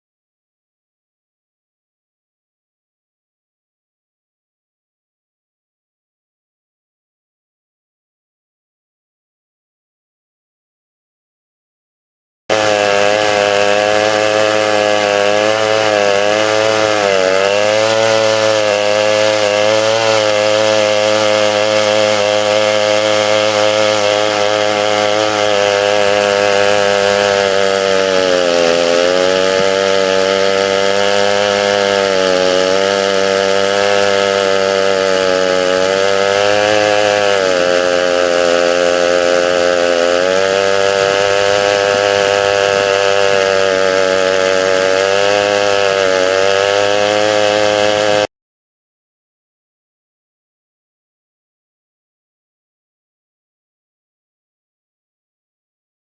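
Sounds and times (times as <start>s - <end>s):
chainsaw cutting log: 12.5s - 48.3s.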